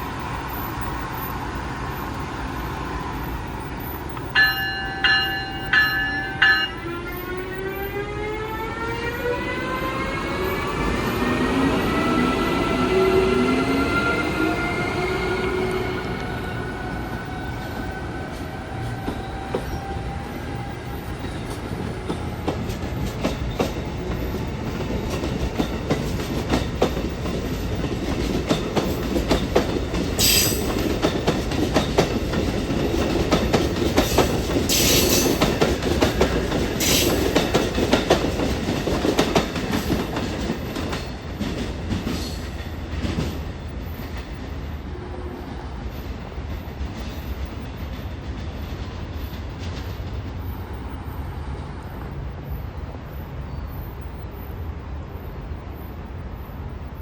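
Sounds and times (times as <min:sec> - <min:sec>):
train wheels clicking on rails: 0:08.9 - 0:44.8, 0:45.8 - 0:52.6.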